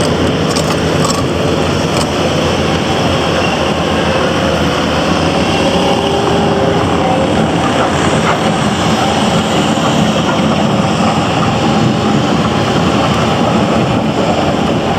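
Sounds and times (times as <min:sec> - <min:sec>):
diesel engine running: 0:00.0 - 0:14.9.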